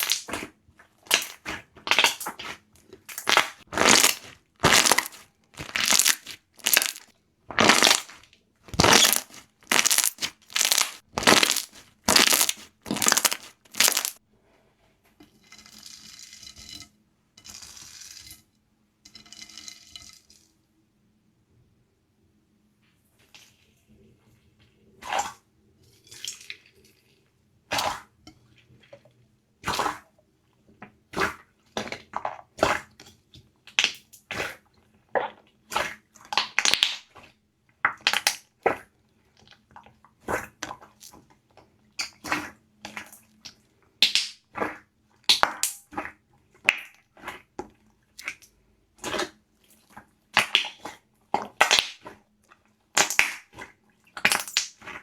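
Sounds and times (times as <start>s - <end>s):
slime squishing and crackling: 0.0s - 14.2s, 50.3s - 52.2s, 52.9s - 55.0s.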